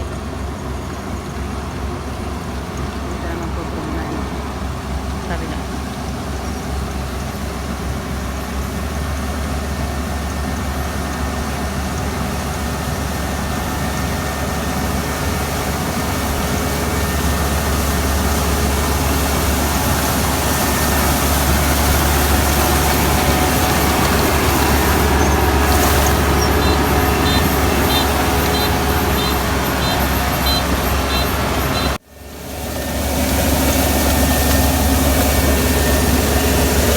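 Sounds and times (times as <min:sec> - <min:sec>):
combine harvester engine drone: 0:00.0 - 0:36.9
short high beeps: 0:25.2 - 0:32.0.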